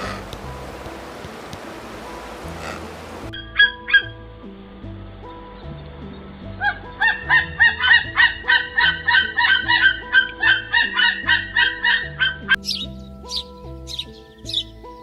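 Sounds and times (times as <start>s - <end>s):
waterfowl honking: 0.0s - 0.4s, 2.4s - 4.1s, 6.6s - 14.6s
background music: 0.0s - 15.0s.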